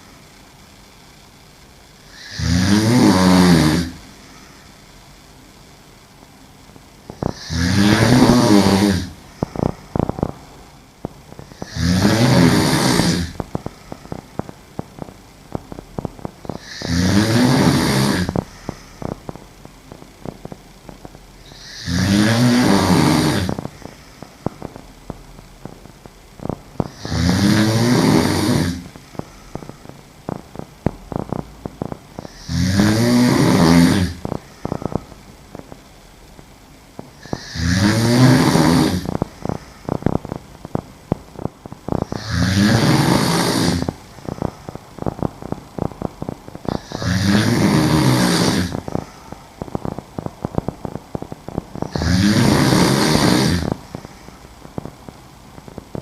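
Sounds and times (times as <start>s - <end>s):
woman snoring: 2.0s - 4.8s, 7.1s - 20.6s, 21.4s - 24.8s, 25.7s - 35.8s, 37.2s - 54.9s.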